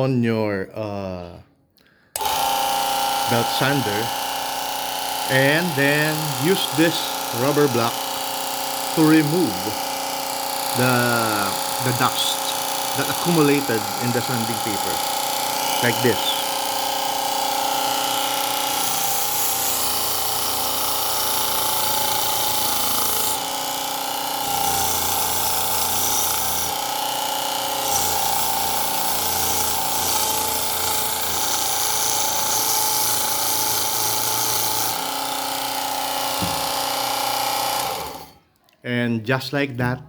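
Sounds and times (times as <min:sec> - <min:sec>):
belt sander motor whine: 0:02.2 - 0:38.4
cleaning block scrubbing sanding belt: 0:05.3 - 0:08.2, 0:08.8 - 0:23.7.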